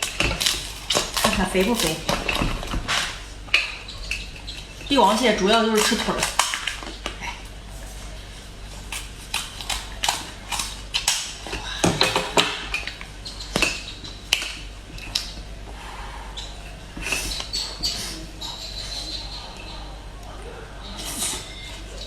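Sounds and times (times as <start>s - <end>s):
crab shell cracking: 0.0s - 3.7s, 8.9s - 13.0s.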